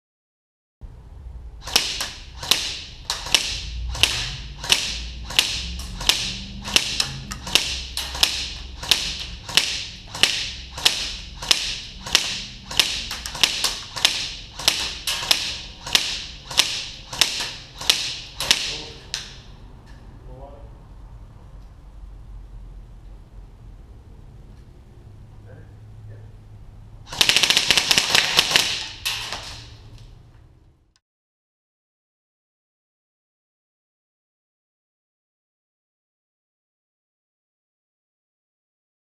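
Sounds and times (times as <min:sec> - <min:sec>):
airsoft gun firing single shots: 0:01.6 - 0:19.4, 0:27.1 - 0:29.7.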